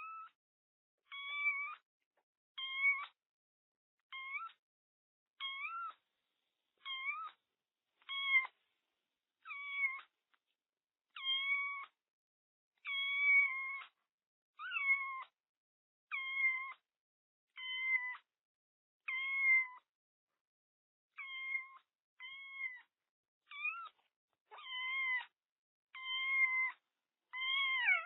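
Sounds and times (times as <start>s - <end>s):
kitten meowing: 1.1s - 1.8s, 2.6s - 3.2s, 4.1s - 4.6s, 5.4s - 6.0s, 6.8s - 7.4s, 8.0s - 8.6s, 9.5s - 10.1s, 11.2s - 12.0s, 12.9s - 13.9s, 14.6s - 15.3s, 16.1s - 16.8s, 17.6s - 18.2s, 19.1s - 19.8s, 21.2s - 22.9s, 23.5s - 25.3s, 26.0s - 28.0s.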